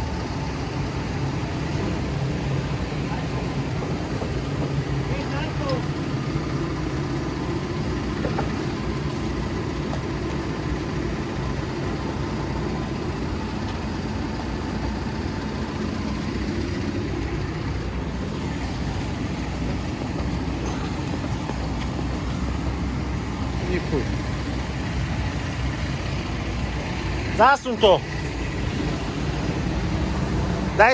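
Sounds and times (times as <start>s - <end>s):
diesel engine running: 0.0s - 30.9s.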